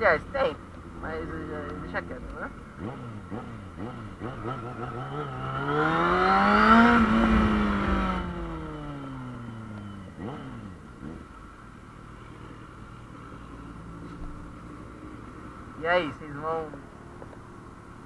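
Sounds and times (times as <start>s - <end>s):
motorcycle engine accelerating: 1.0s - 11.5s.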